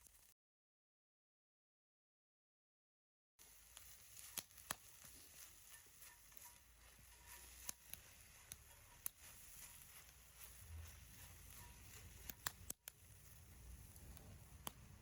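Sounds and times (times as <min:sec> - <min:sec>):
campfire crackling: 0:03.4 - 0:15.0
sharp pops from fire: 0:03.5 - 0:06.7, 0:07.5 - 0:10.3, 0:11.3 - 0:15.0.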